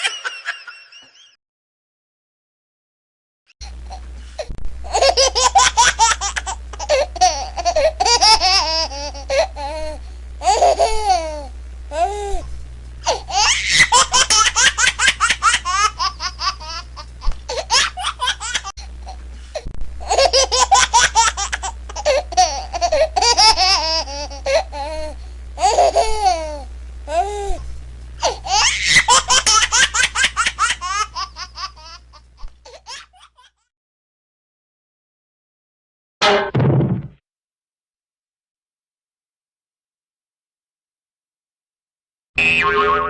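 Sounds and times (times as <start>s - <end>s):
steady low hum: 3.6s - 32.8s.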